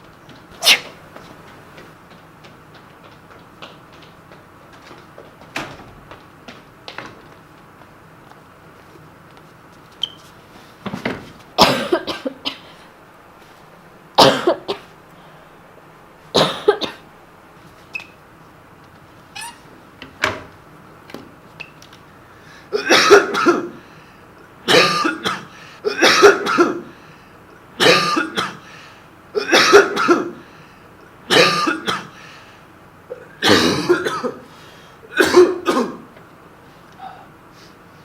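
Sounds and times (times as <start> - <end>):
person coughing: 0.6 - 1.0, 11.6 - 12.8, 14.2 - 14.9, 16.4 - 17.0, 22.7 - 23.8, 24.6 - 27.0, 27.8 - 28.7, 29.4 - 30.5, 31.3 - 32.2, 33.1 - 34.5, 35.1 - 36.1.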